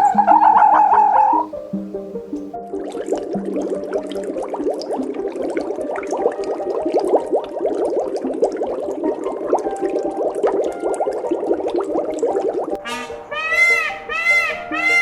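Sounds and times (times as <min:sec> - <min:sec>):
animals calling: 0:00.0 - 0:02.5, 0:12.8 - 0:15.0.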